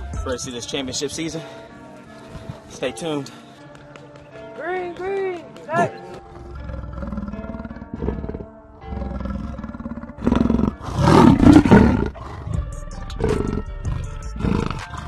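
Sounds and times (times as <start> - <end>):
music: 0.0 - 15.0
big cat roar: 6.0 - 15.0.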